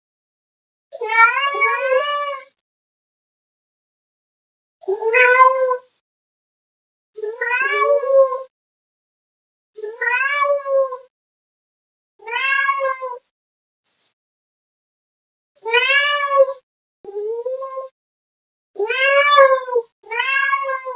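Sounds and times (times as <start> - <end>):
cat meowing: 1.0 - 2.4, 5.0 - 5.8, 7.4 - 8.4, 10.0 - 11.1, 12.2 - 13.3, 15.7 - 16.6, 18.8 - 20.9.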